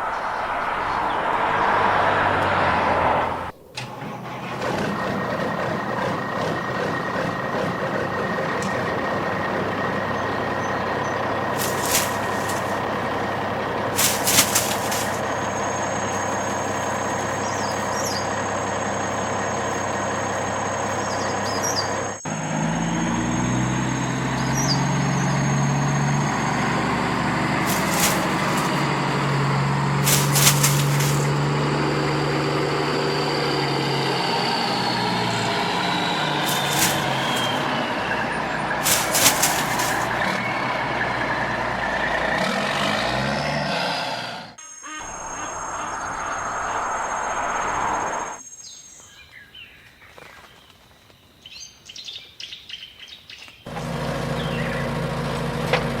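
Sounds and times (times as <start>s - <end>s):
heavy truck engine running: 0.0s - 48.4s, 53.7s - 56.0s
air brakes hissing: 6.5s - 21.8s, 27.0s - 40.6s.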